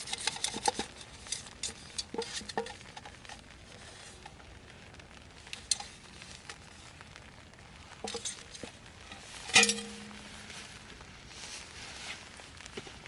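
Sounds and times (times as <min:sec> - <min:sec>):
faint steady hiss: 0:00.0 - 0:13.0
ringing metallic clank: 0:09.5 - 0:10.2.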